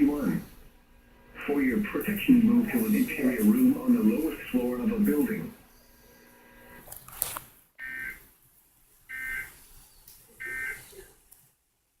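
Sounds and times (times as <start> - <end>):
buzzy digital squawks: 7.8 - 8.2, 9.1 - 9.6, 10.4 - 10.9.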